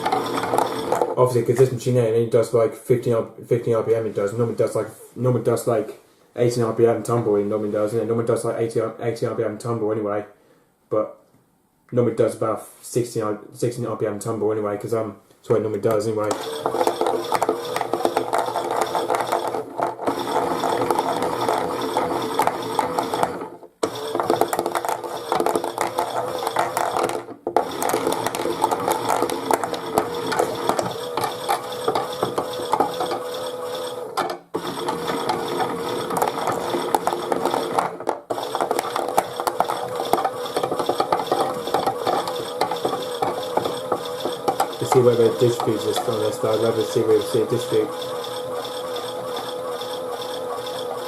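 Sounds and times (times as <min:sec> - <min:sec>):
toy washing machine motor clicking: 0:00.0 - 0:01.2, 0:16.3 - 0:51.0.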